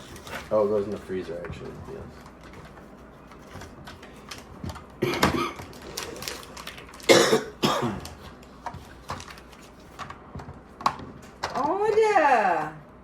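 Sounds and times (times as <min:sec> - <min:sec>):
person coughing: 0:05.0 - 0:05.7, 0:07.1 - 0:08.2.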